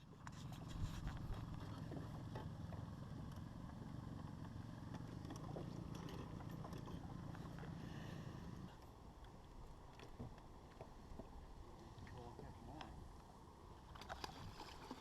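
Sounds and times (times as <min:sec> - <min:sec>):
boat motor running: 0:00.0 - 0:15.0.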